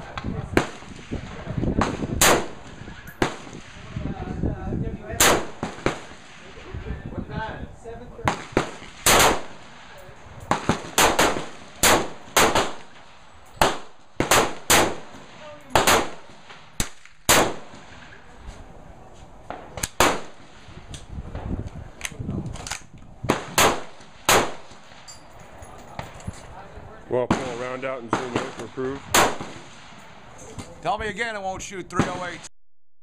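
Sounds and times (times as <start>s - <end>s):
rifle shots: 0.5s - 4.0s, 5.2s - 6.6s, 8.3s - 18.2s, 19.5s - 20.8s, 22.6s - 25.1s, 27.3s - 30.7s.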